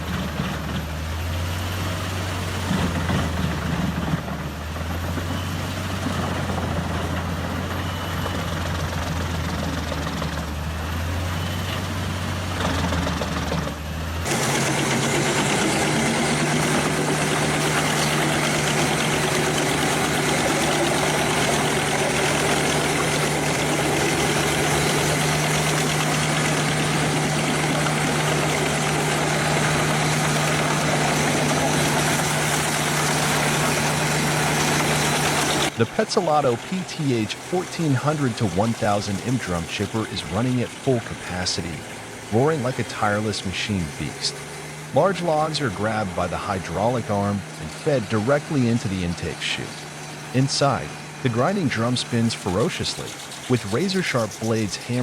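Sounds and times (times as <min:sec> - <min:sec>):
wood chipper diesel engine: 0:00.0 - 0:55.0
higher-pitched chipper hum: 0:14.2 - 0:55.0.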